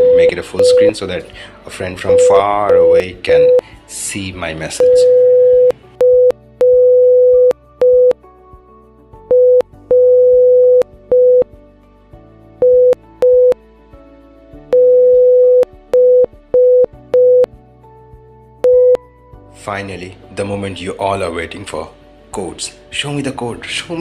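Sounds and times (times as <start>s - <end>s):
morse code beeps: 0.0s - 1.0s, 2.1s - 3.6s, 4.8s - 8.2s, 9.3s - 11.5s, 12.6s - 13.6s, 14.7s - 17.5s, 18.6s - 19.0s
faint background music: 0.0s - 24.0s.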